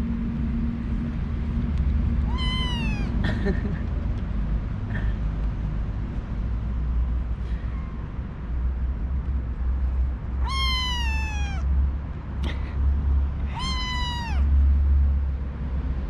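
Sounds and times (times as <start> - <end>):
kitten meowing: 2.2 - 3.2, 10.4 - 11.7, 13.4 - 14.6.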